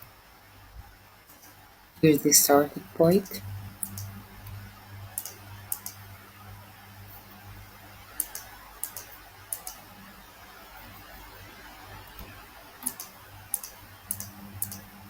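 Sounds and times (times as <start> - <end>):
faint low hum: 0.0 - 15.0
computer mouse clicking: 3.2 - 6.0, 8.1 - 9.9, 12.1 - 14.9.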